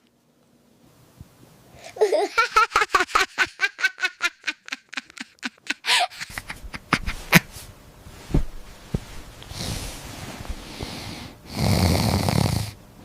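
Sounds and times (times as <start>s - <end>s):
knocks against microphone: 8.3s - 9.1s.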